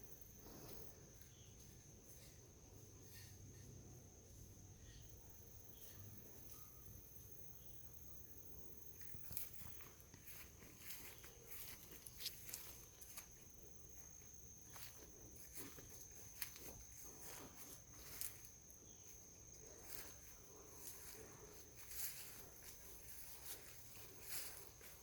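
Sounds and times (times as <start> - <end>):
faint high-pitched tone: 5.1 - 8.2.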